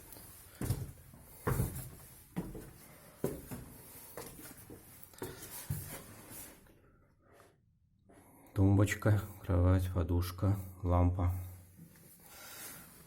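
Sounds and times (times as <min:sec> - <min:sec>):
footsteps climbing steps: 0:00.0 - 0:06.1.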